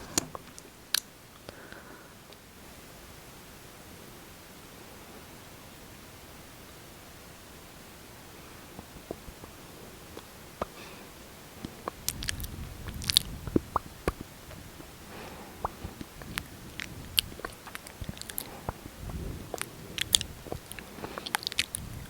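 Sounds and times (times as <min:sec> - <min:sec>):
sticky lip clicks and smacks: 0:11.6 - 0:21.8.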